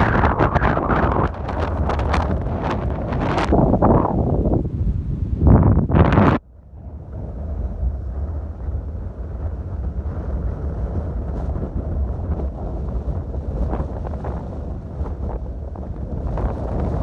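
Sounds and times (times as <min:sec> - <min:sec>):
wind buffeting microphone: 0:00.0 - 0:17.0.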